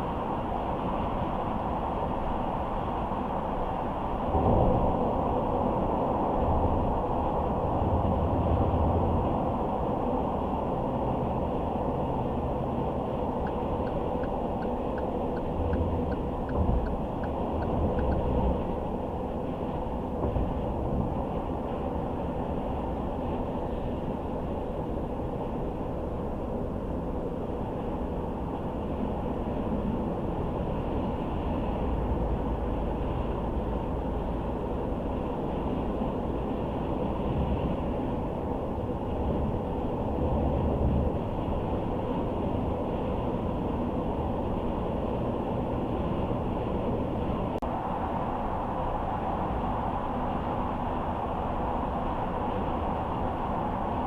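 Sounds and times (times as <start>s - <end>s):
low engine rumble: 0.0s - 54.0s
tyre and road noise: 2.7s - 22.4s
light evenly spaced ticks: 13.4s - 18.4s.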